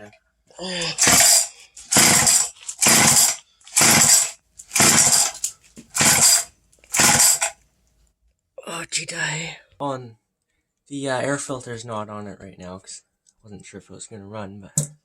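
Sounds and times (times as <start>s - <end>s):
chainsaw rope pull-start: 0.9s - 7.6s.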